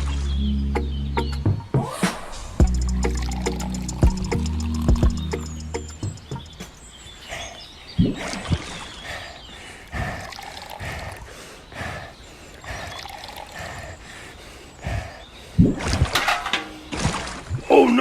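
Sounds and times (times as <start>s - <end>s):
water pouring in spurts: 2.6s - 6.3s, 9.7s - 14.3s.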